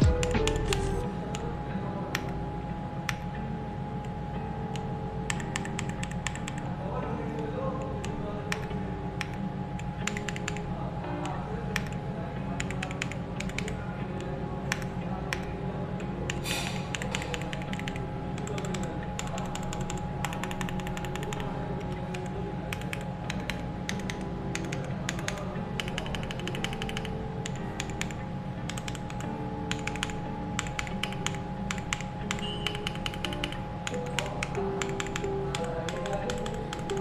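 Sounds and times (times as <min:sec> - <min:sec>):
soft background music: 0:00.0 - 0:37.0
mechanical keyboard key clacks: 0:10.0 - 0:10.6, 0:12.6 - 0:13.7, 0:16.3 - 0:28.1, 0:28.7 - 0:37.0.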